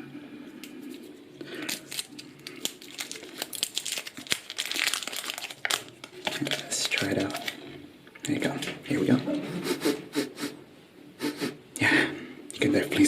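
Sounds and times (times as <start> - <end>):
candy wrapper crinkling and tearing: 0.9 - 7.7.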